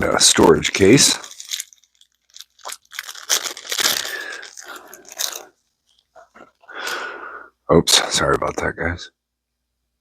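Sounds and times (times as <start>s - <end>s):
packaging crinkling and rustling: 0.0s - 6.7s.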